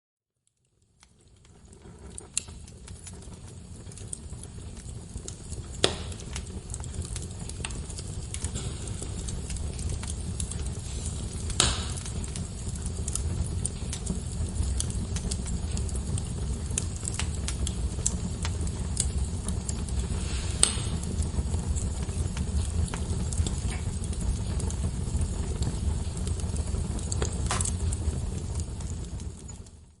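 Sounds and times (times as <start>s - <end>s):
fire crackling and popping: 0.4s - 30.0s
fire rumbling: 0.5s - 30.0s.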